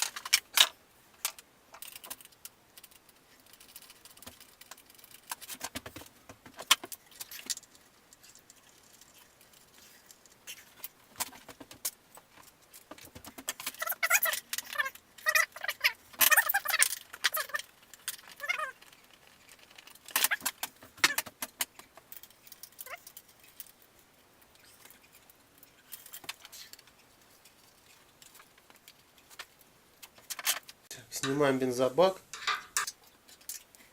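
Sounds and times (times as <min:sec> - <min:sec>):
metal tools clinking: 0:32.3 - 0:33.6.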